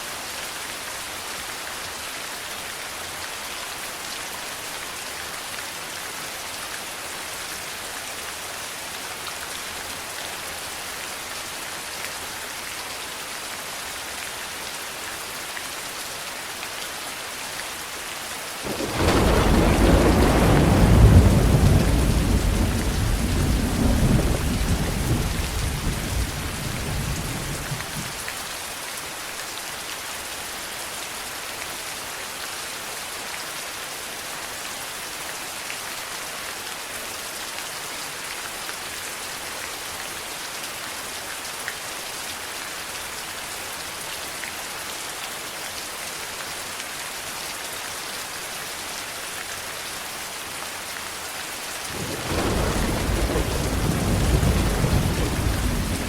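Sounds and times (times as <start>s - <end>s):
heavy rain: 0.0s - 56.0s
thunder rumble: 18.7s - 28.2s, 51.9s - 56.0s.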